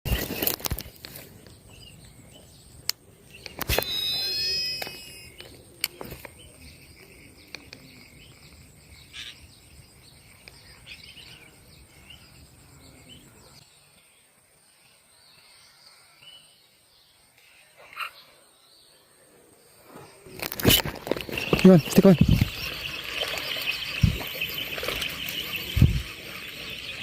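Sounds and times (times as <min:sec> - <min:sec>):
birds chirping: 0:00.1 - 0:27.0
high insect tone: 0:03.3 - 0:27.0
fishing reel whirring: 0:03.7 - 0:05.4, 0:20.5 - 0:27.0.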